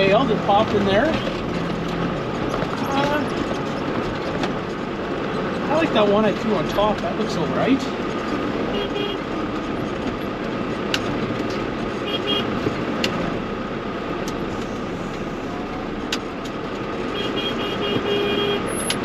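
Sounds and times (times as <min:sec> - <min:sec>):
tractor engine running: 0:00.0 - 0:19.0.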